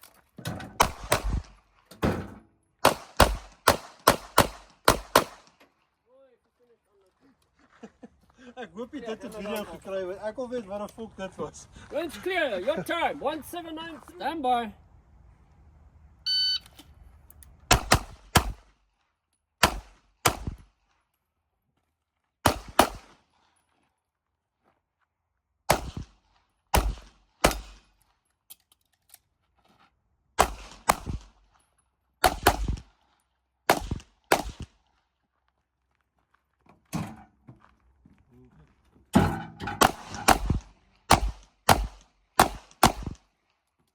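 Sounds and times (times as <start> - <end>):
handgun firing: 2.8 - 5.5, 19.6 - 20.6, 22.5 - 23.1, 26.8 - 27.8, 32.2 - 32.8, 33.7 - 34.7, 39.8 - 43.2
shot timer beep: 16.3 - 16.7.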